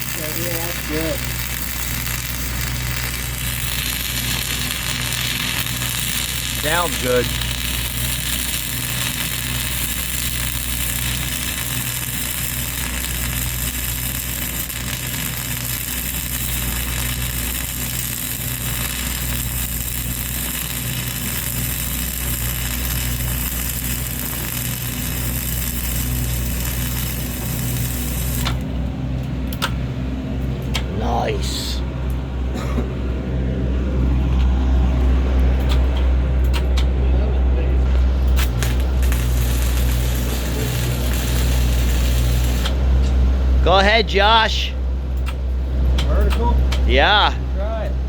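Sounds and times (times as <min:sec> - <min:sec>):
welding arc hissing: 0:00.0 - 0:28.7, 0:38.0 - 0:43.0
engine hum: 0:00.0 - 0:48.0.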